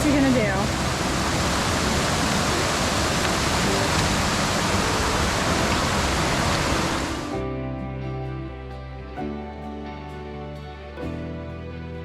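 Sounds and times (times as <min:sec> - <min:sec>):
fast-flowing water rushing: 0:00.0 - 0:07.4.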